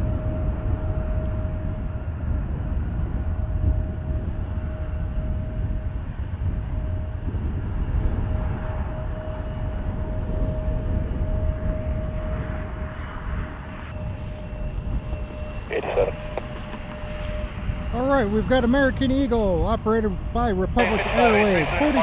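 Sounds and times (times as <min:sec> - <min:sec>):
wind buffeting microphone: 0:00.0 - 0:22.0
jet engines whining: 0:12.1 - 0:22.0.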